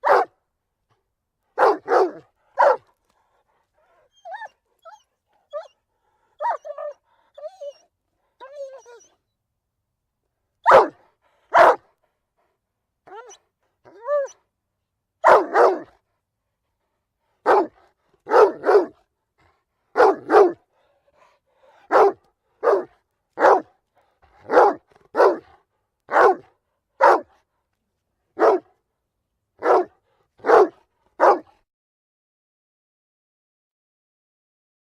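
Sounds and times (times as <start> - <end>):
dog barking: 0.0 - 0.4, 1.6 - 2.9, 6.4 - 7.0, 10.6 - 11.9, 15.2 - 16.0, 17.4 - 19.0, 19.9 - 20.6, 21.7 - 23.8, 24.4 - 27.4, 28.4 - 28.7, 29.6 - 31.6
dog whining: 4.1 - 5.8, 6.4 - 7.8, 8.4 - 9.1, 13.1 - 14.4.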